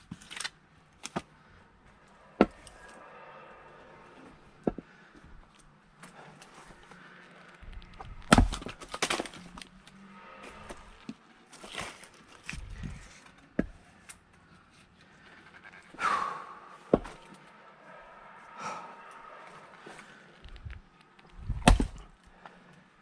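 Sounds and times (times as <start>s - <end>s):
wood splintering: 7.6s - 9.7s, 21.4s - 22.1s
knocks and thuds of wood: 8.0s - 9.4s, 16.9s - 17.3s, 21.4s - 22.1s
axe splitting log: 8.0s - 9.7s, 16.9s - 17.2s, 21.5s - 22.1s.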